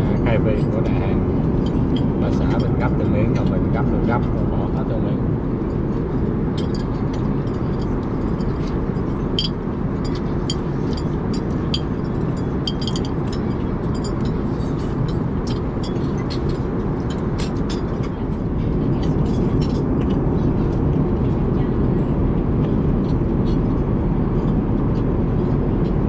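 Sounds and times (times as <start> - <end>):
airplane cabin rumble: 0.0 - 26.0
chopsticks clinking on dishes: 12.6 - 18.2.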